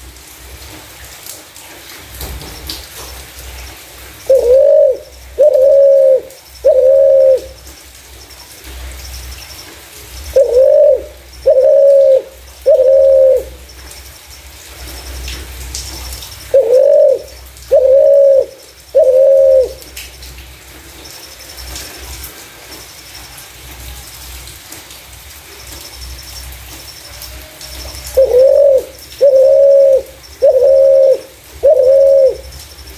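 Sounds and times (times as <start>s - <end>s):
dove cooing: 4.2s - 7.6s, 10.3s - 13.6s, 16.2s - 19.9s, 27.2s - 32.6s.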